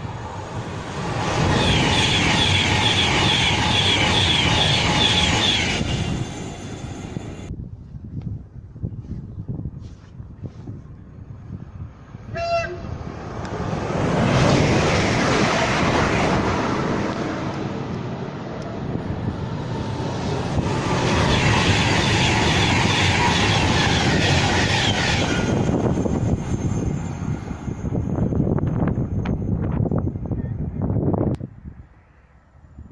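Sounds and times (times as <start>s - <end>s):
train passing rumble: 0.0s - 32.9s
train horn blast: 12.3s - 13.0s.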